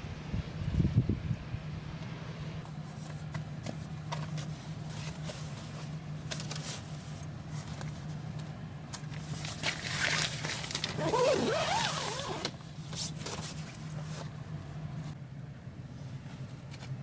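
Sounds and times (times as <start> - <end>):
rustles: 2.6 - 15.2.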